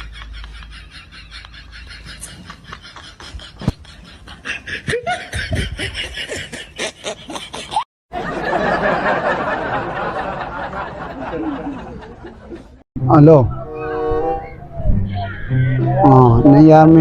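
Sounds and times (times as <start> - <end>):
snickering laughter: 0.0 - 12.8.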